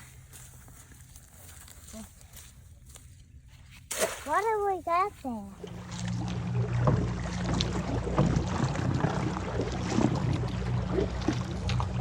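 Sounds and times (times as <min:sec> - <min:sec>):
small boat motor running: 0:05.4 - 0:12.0.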